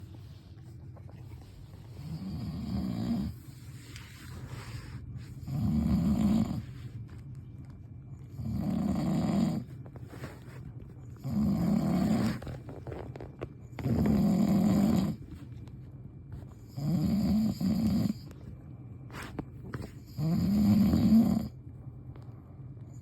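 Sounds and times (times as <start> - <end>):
loud snoring: 2.0 - 3.4, 5.4 - 6.7, 8.4 - 9.7, 11.2 - 12.5, 13.8 - 15.2, 16.7 - 18.3, 20.0 - 21.6.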